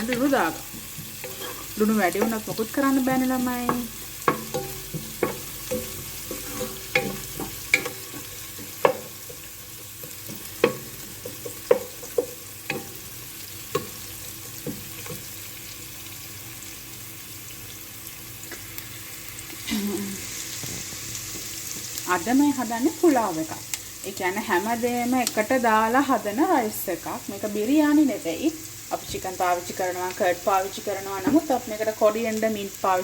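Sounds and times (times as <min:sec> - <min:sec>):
onions sizzling in hot oil: 0:00.0 - 0:33.0
spoon knocking against pot: 0:03.6 - 0:13.0.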